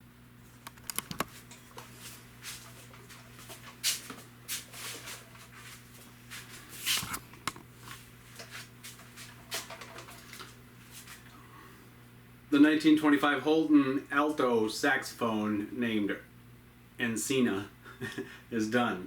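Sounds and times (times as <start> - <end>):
low electrical hum: 0.0 - 19.0
rustling and shuffling: 0.4 - 11.4
clicks: 0.6 - 1.3.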